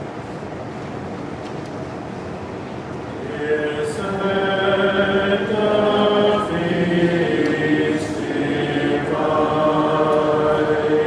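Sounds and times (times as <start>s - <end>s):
congregation singing a hymn: 3.2s - 11.0s.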